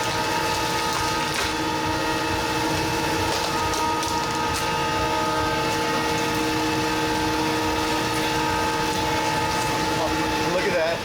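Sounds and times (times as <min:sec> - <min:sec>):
machine drone: 0:00.0 - 0:11.0.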